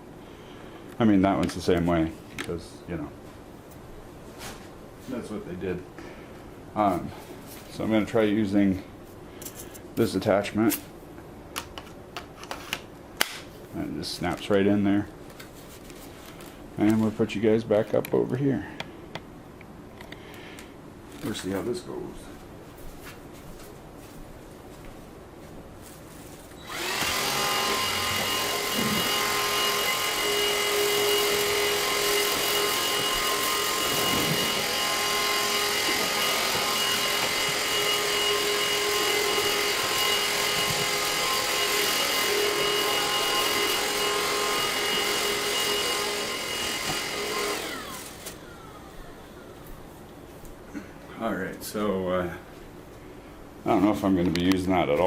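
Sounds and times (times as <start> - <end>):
stick vacuum motor whining: 26.6 - 49.8.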